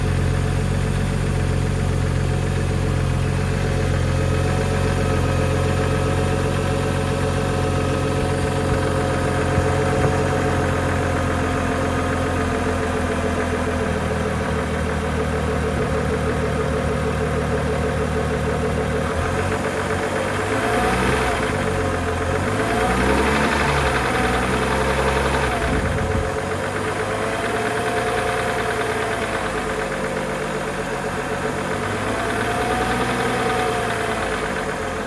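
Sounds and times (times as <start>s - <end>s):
car engine idling with knock: 0.0s - 35.0s.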